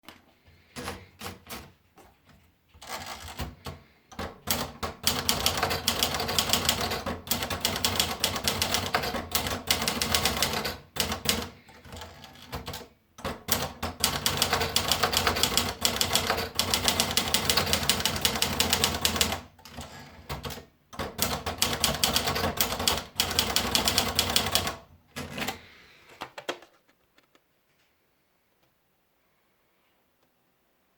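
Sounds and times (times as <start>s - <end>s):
manual typewriter typing: 0.6s - 1.8s, 2.8s - 25.8s.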